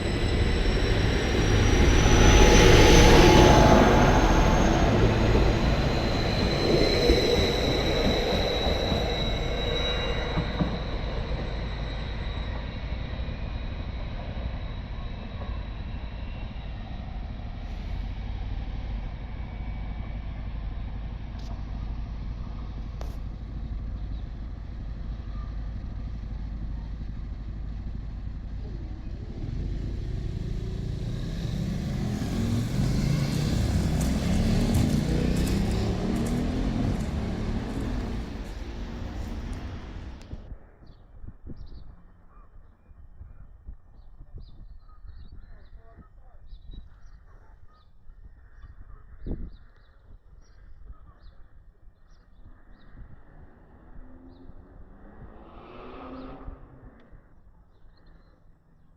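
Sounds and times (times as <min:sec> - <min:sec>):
diesel train engine running: 0:00.0 - 0:40.8.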